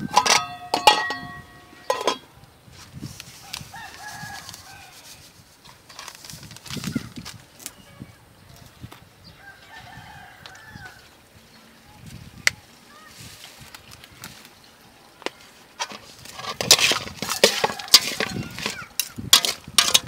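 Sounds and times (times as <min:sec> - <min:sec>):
clattering: 0:00.1 - 0:02.2
rooster crowing: 0:03.5 - 0:05.2, 0:09.4 - 0:11.1, 0:17.3 - 0:18.8.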